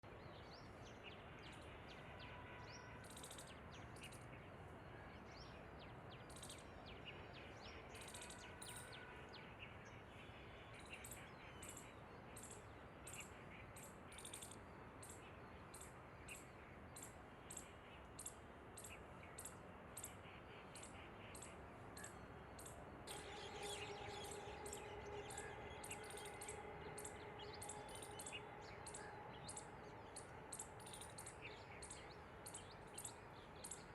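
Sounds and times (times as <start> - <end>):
birds chirping: 21.3 - 33.9
steady low hum: 23.0 - 33.9.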